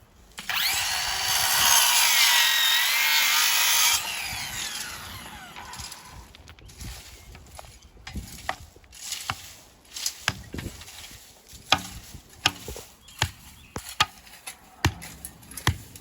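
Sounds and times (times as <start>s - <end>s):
hammer strikes: 14.8s - 16.0s.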